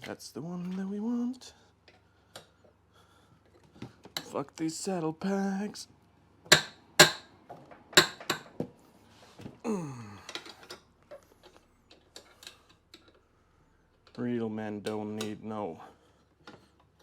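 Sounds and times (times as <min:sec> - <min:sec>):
hand tools clicking on bolts: 0:06.5 - 0:07.3, 0:08.0 - 0:08.5
person grunting: 0:09.6 - 0:10.4.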